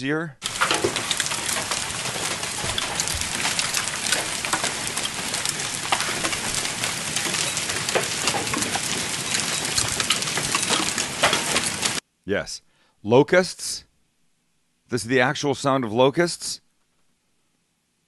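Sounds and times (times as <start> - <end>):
hailstones falling hard: 0.4 - 12.0.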